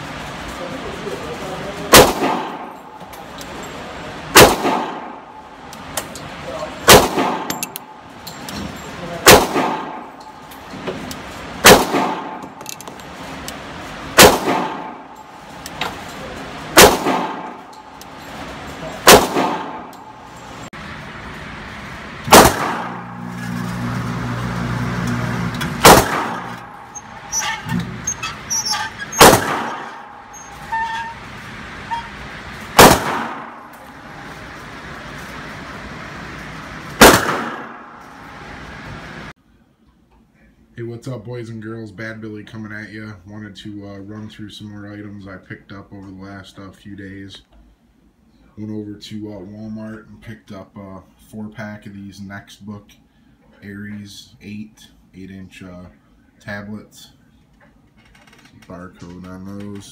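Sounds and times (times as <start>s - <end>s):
pistol shots: 1.9s - 2.9s, 4.3s - 5.4s, 6.8s - 7.8s, 9.2s - 10.2s, 11.6s - 12.6s, 14.1s - 15.2s, 16.7s - 17.7s, 19.0s - 20.2s, 22.3s - 23.3s, 25.8s - 27.4s, 29.1s - 30.5s, 32.7s - 33.9s, 37.0s - 38.0s.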